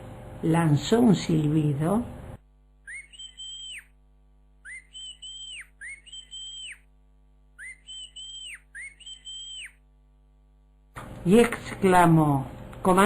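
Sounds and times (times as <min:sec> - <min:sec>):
two-note human whistle: 0:02.9 - 0:03.9, 0:04.7 - 0:06.8, 0:07.6 - 0:09.8.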